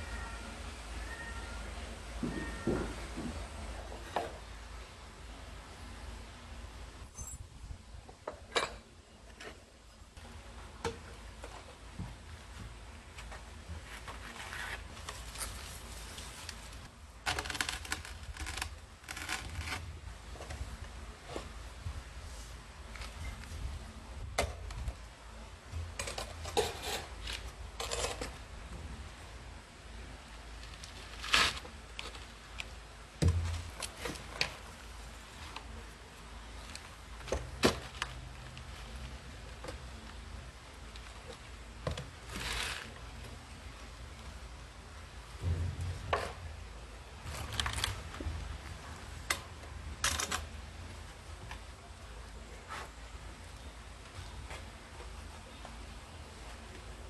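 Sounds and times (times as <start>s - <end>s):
low steady rumble: 42.9s - 55.4s.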